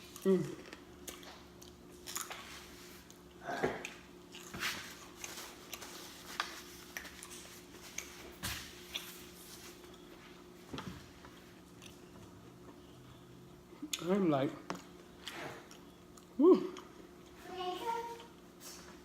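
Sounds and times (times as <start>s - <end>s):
steady low hum: 0.0s - 19.0s
chewing with wet smacks: 0.1s - 2.4s.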